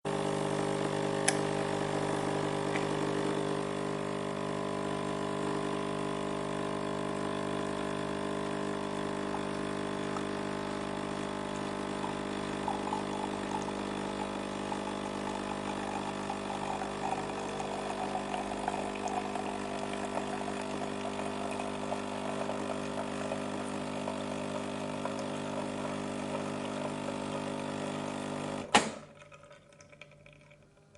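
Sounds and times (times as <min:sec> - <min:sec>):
coffee machine humming: 0:00.0 - 0:30.9
coffee machine switch click: 0:01.2 - 0:01.5.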